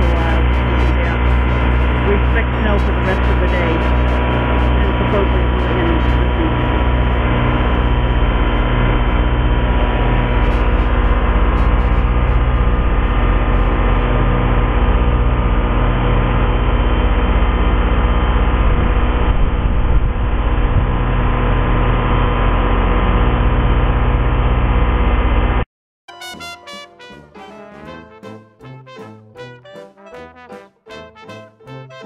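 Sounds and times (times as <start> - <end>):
snow-clearing machine engine drone: 0.0 - 25.6.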